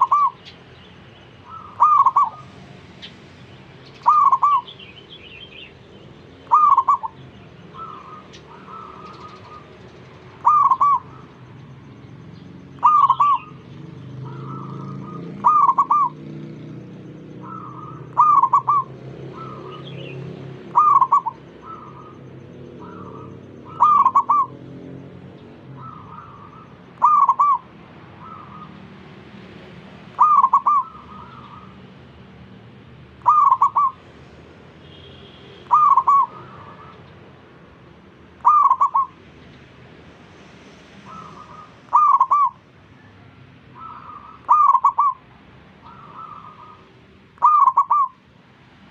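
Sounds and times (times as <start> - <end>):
dove cooing: 0.0 - 0.6, 1.4 - 3.2, 4.0 - 4.8, 6.4 - 11.9, 12.7 - 16.7, 17.3 - 28.8, 30.0 - 31.8, 33.2 - 34.0, 35.6 - 37.2, 38.4 - 39.2, 41.0 - 48.2.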